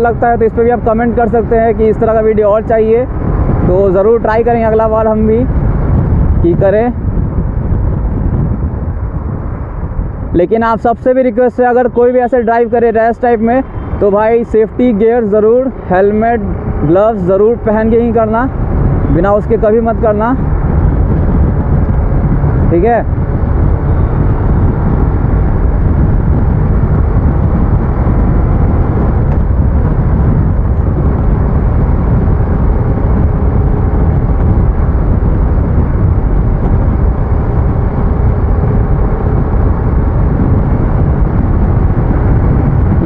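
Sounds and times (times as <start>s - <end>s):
wind noise: 0.0s - 43.0s
motorcycle engine running: 12.7s - 43.0s.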